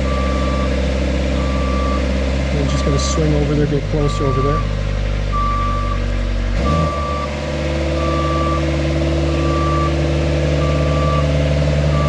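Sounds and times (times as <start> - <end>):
lift engine and hydraulics running: 0.0 - 12.0
motion alarm beeping: 1.4 - 2.0, 4.1 - 4.7, 6.6 - 7.3, 8.0 - 8.7, 9.4 - 10.0, 10.6 - 11.3.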